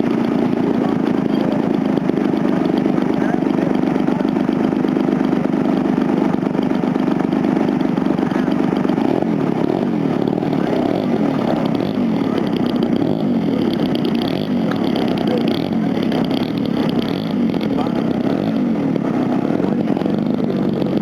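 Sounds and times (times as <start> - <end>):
model airplane engine: 0.0 - 21.0.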